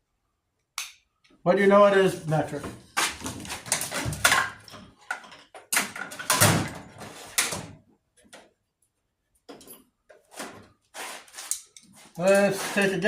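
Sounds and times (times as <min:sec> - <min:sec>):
hand tools clinking and knocking: 0:03.1 - 0:07.2, 0:11.5 - 0:13.0.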